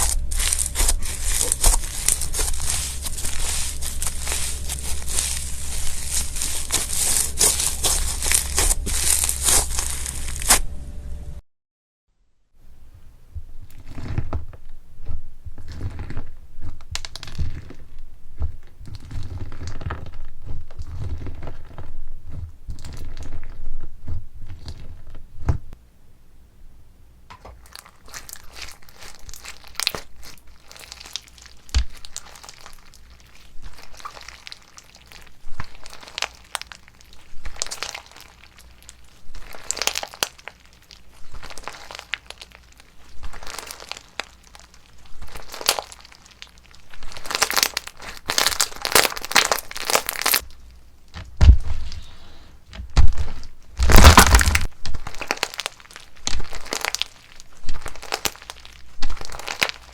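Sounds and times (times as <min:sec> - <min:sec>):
slime crackling pops: 0:00.0 - 0:10.6, 0:53.8 - 0:59.9
slime squishing: 0:00.0 - 0:10.8, 0:13.4 - 0:25.8, 0:27.3 - 0:59.9.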